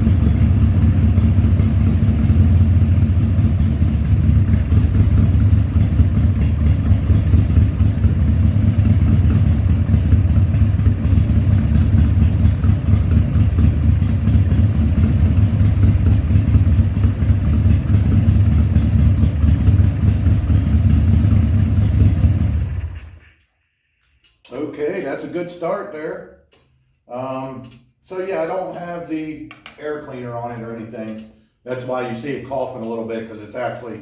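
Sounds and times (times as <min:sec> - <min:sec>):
motorcycle engine idling: 0:00.0 - 0:23.2.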